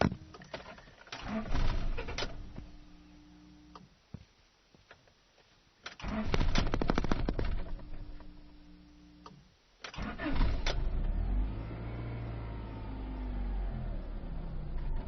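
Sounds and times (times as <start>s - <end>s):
car engine starter cranking: 1.1s - 2.4s, 5.9s - 6.7s, 9.9s - 11.2s.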